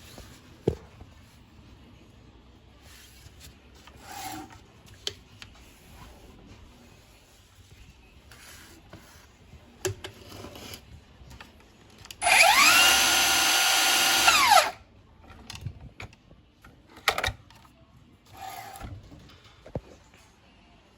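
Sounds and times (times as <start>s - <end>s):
miter saw motor whine: 12.2s - 14.7s.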